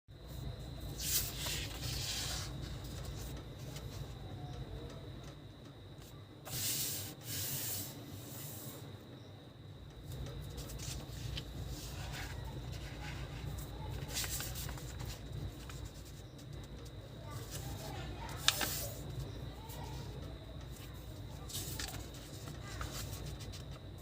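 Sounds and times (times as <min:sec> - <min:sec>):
paper rustling and folding: 0:00.7 - 0:04.5, 0:10.1 - 0:24.0.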